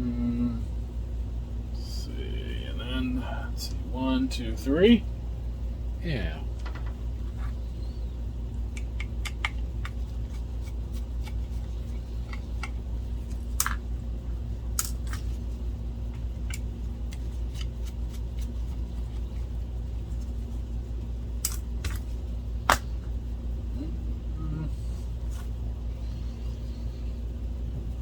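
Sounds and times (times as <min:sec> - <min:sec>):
steady low hum: 0:00.0 - 0:28.0
clicks of small parts handled: 0:14.8 - 0:15.3, 0:21.4 - 0:22.1.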